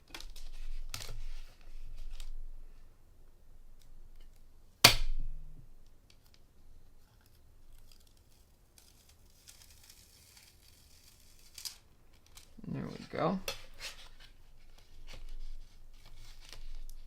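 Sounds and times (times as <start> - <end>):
sharp snap: 4.8 - 5.4
paper rustling: 7.2 - 17.0.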